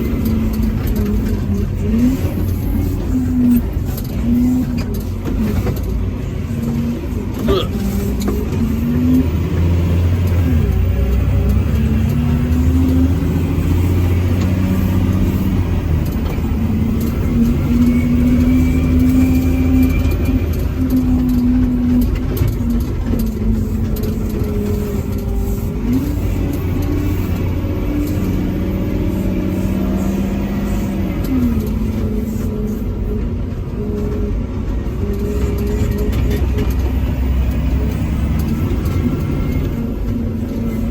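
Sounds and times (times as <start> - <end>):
diesel truck engine under load: 0.0 - 40.9.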